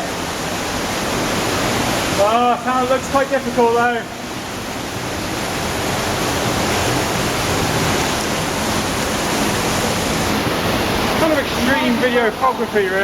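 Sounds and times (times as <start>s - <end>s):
rushing water: 0.0s - 13.0s.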